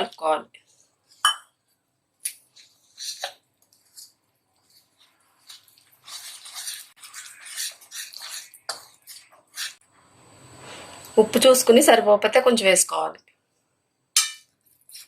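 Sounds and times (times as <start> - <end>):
batter being stirred in a bowl: 0.6 - 9.9, 14.5 - 15.0.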